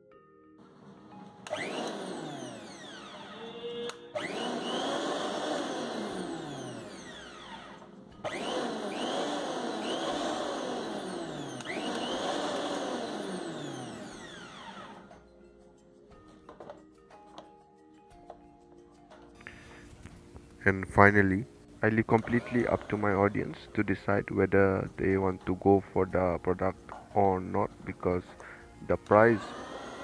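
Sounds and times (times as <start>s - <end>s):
mixer grinder motor whining: 0.6s - 15.2s, 21.9s - 23.8s, 28.1s - 30.0s.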